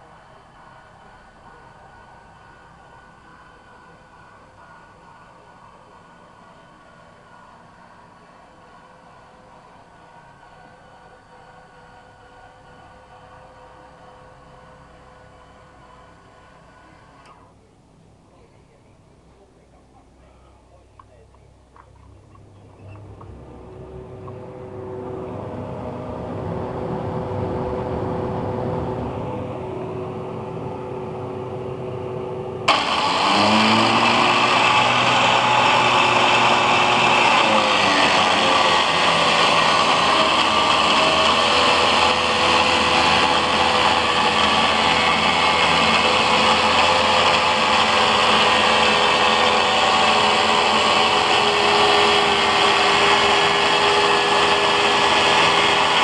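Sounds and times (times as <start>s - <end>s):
angle grinder humming: 22.4s - 56.0s
grinder disc cutting harshly: 32.7s - 56.0s.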